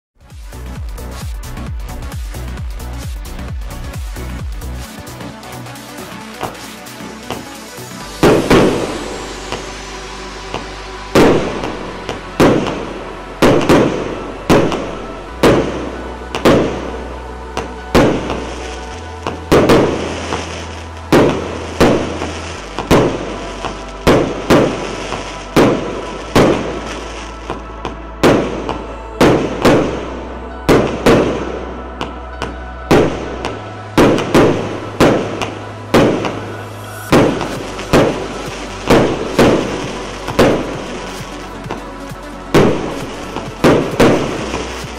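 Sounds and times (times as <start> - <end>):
fireworks bangs: 8.2 - 9.7, 10.6 - 16.8, 19.4 - 27.6, 34.0 - 41.8, 42.5 - 44.9.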